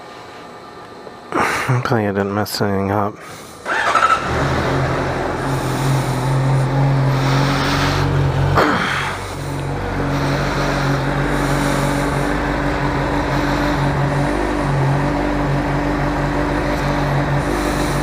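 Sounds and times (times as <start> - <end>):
motorcycle engine idling: 3.6 - 18.0.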